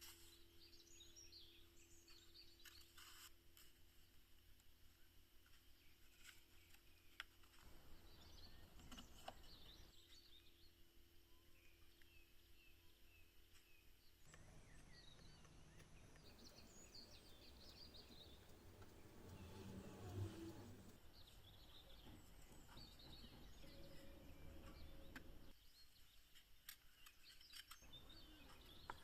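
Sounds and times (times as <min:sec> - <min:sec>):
bird chirps: 0:06.6 - 0:29.0.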